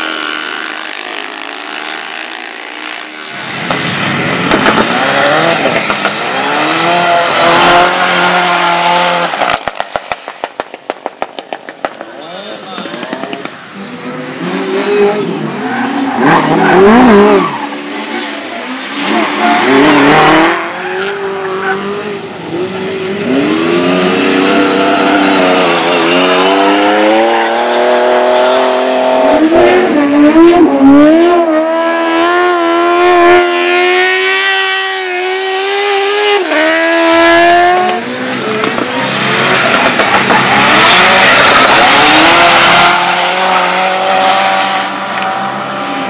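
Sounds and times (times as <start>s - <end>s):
racing engines revving: 0.0s - 46.0s.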